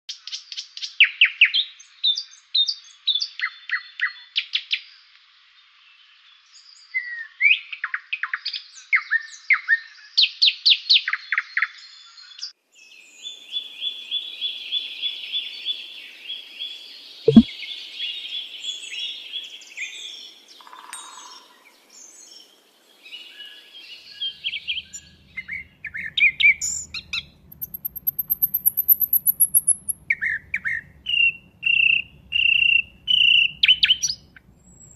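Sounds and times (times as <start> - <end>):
nightingale singing: 23.5 - 34.9.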